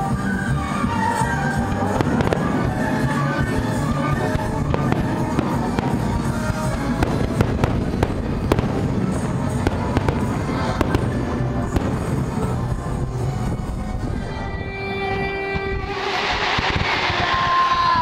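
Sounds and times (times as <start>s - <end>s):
fireworks bangs and crackles: 0.0s - 14.3s, 15.7s - 18.0s
loud music: 0.0s - 18.0s.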